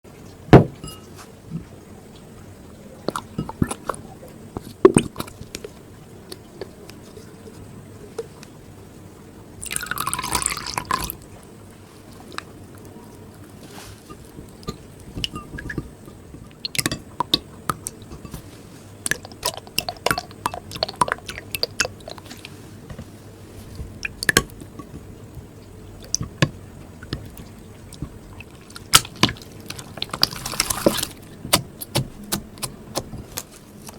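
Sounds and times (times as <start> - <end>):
liquid pouring into container: 9.6 - 11.2, 28.0 - 31.2
clicks and taps of containers: 14.3 - 18.4.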